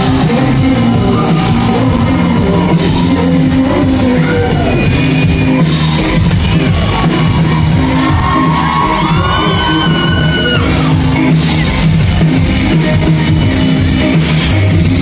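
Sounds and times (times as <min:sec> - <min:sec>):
person singing: 0:00.0 - 0:11.4
drum kit: 0:00.0 - 0:15.0.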